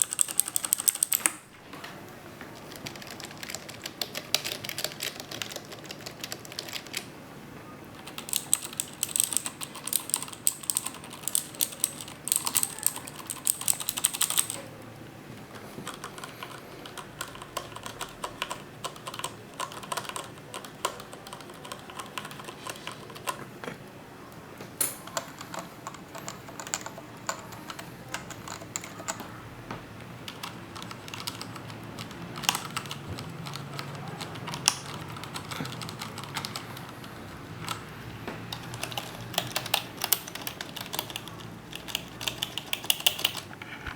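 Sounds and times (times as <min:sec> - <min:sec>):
typing on computer keyboards: 0:00.0 - 0:01.5, 0:02.4 - 0:07.2, 0:07.9 - 0:23.5, 0:24.7 - 0:43.5.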